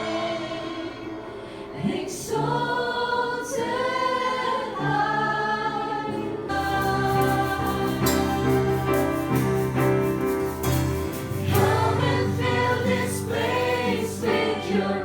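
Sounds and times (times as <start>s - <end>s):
choir singing held notes: 0.0s - 15.0s
music accompaniment with steady beat: 6.5s - 15.0s.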